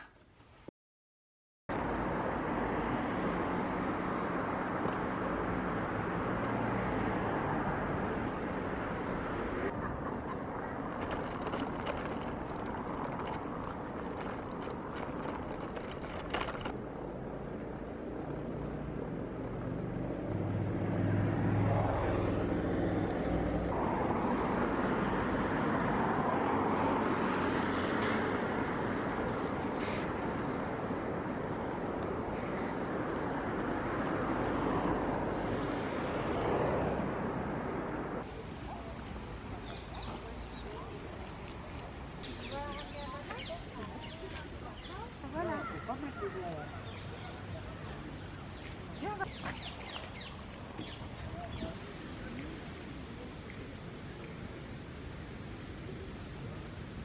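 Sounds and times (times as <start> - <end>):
traffic hum: 1.7 - 57.0
engine rumble passing: 5.3 - 31.8.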